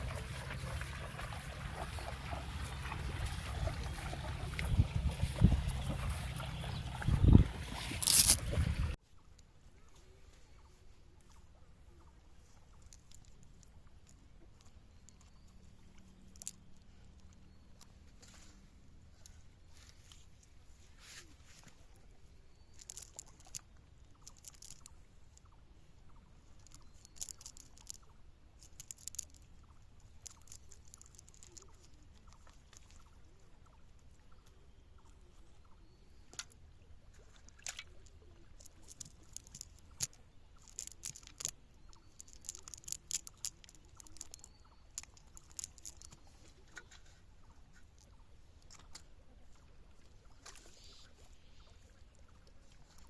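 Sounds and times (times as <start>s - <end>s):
sharp clicks of water: 0.0s - 9.0s, 22.6s - 25.6s, 26.2s - 35.2s, 35.8s - 53.0s
small water splashes: 0.0s - 9.0s, 28.7s - 53.0s.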